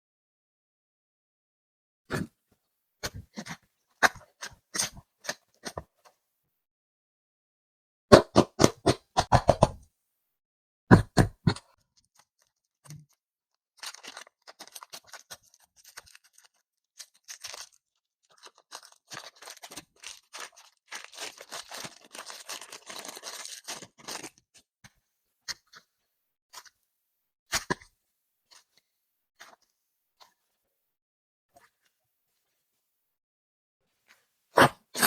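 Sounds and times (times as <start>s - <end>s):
crackling and tearing packaging: 13.8s - 24.7s.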